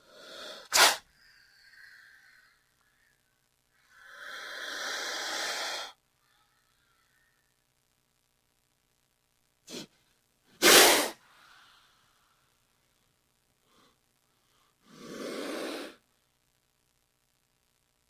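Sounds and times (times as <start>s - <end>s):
snake hissing: 0.0s - 1.0s, 3.9s - 6.0s, 10.6s - 11.2s, 14.8s - 16.0s.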